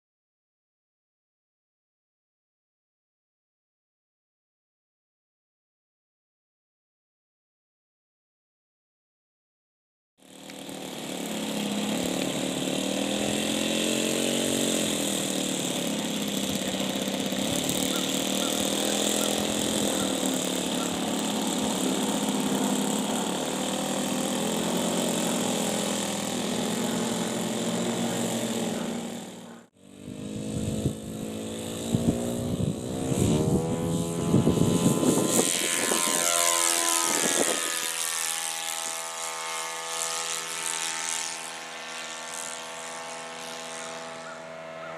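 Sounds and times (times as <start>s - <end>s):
model plane motor whining: 10.2s - 44.9s
model plane flying past: 10.3s - 44.9s.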